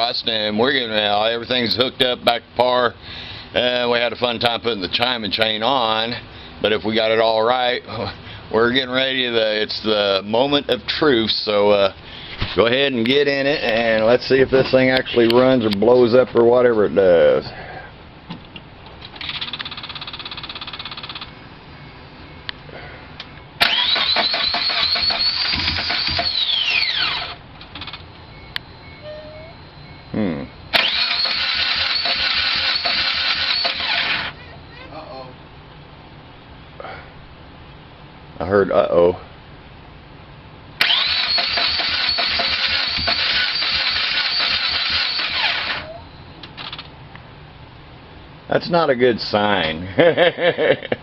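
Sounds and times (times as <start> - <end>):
engine cranking with starter whine: 19.1 - 21.9, 23.6 - 34.4, 40.8 - 47.0.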